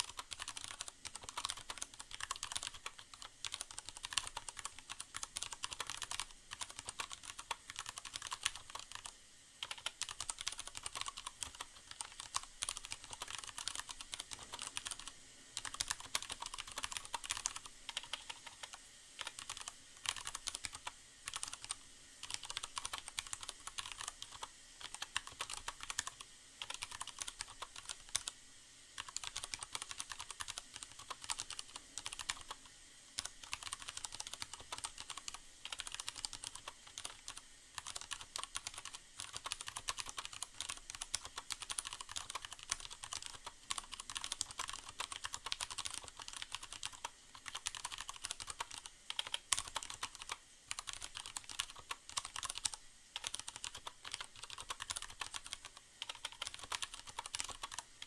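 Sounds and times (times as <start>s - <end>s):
mechanical keyboard typing: 0.0s - 28.4s, 29.0s - 58.0s
faint rain hiss: 0.0s - 58.0s.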